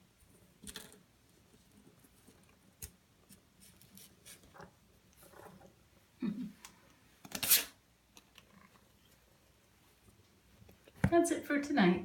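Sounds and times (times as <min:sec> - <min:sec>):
kittens scratching and scuffling: 0:00.2 - 0:05.8.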